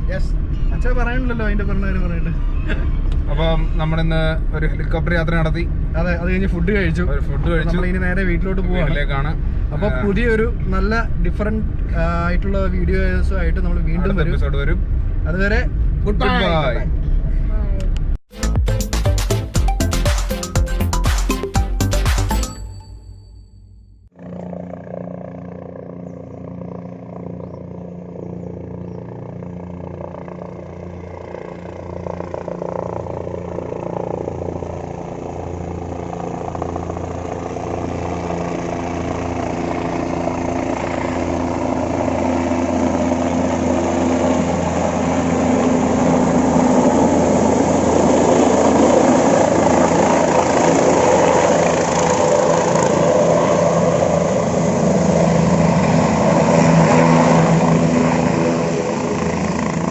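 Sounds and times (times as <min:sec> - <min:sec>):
helicopter engine and rotor: 0:24.1 - 0:59.9.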